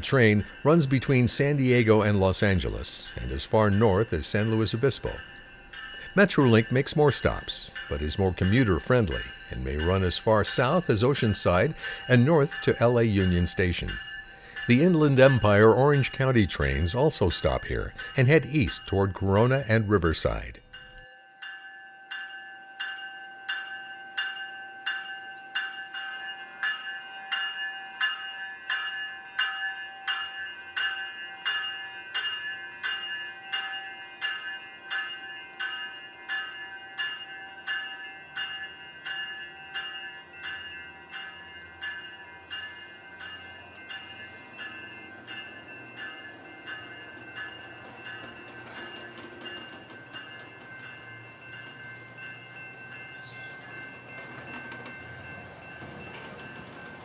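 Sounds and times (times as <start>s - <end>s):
railroad bell ringing: 0.0s - 57.0s
low rumble of a train: 37.0s - 57.0s.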